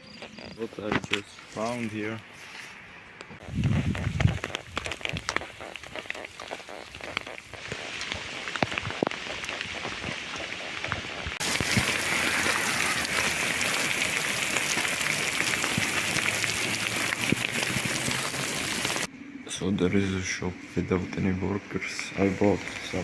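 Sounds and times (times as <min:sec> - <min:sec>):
rain falling on a surface: 0:08.6 - 0:19.1.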